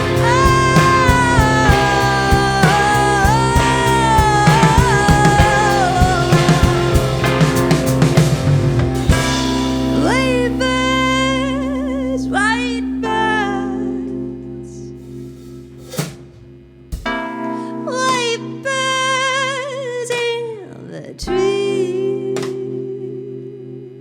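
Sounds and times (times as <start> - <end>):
woman singing: 0.0 - 8.2, 9.2 - 14.8, 17.6 - 24.0
live band music: 0.0 - 10.3, 15.1 - 17.1.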